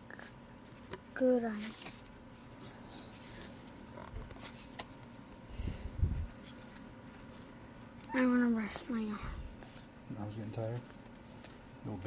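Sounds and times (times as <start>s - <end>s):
cards rustling: 0.2s - 5.2s.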